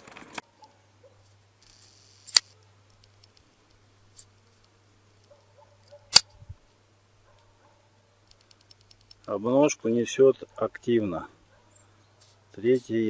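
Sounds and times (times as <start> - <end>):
sharp clicks: 0.0 - 0.4, 1.6 - 6.4, 8.2 - 9.4.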